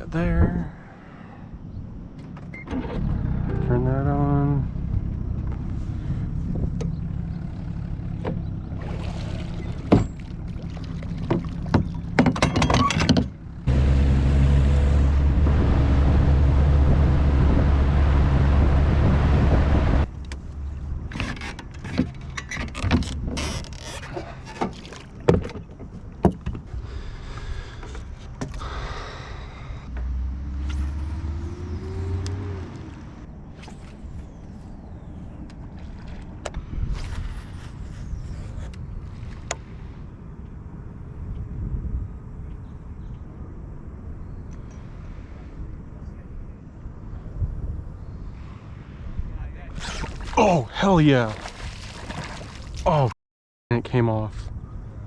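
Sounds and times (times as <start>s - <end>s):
boat motor running: 6.6s - 12.4s, 13.7s - 20.1s.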